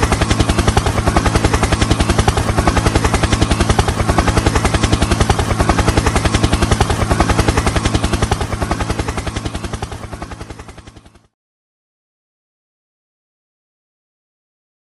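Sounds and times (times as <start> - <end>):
engine whine: 0.0 - 11.3
helicopter rotor thumping: 0.0 - 11.3.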